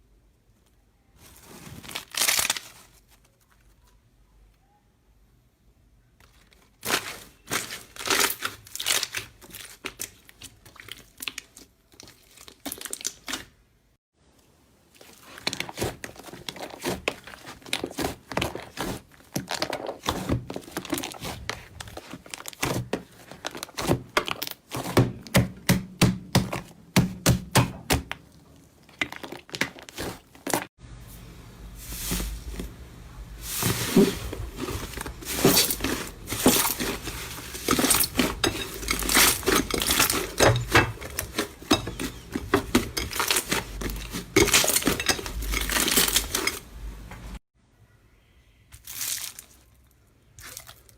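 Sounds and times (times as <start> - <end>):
slime crackling and popping: 6.8 - 13.5.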